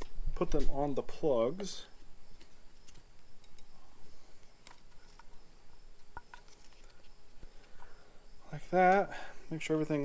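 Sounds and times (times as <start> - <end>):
small clicks and rubbing: 2.3 - 3.7, 4.4 - 5.4, 6.0 - 7.9.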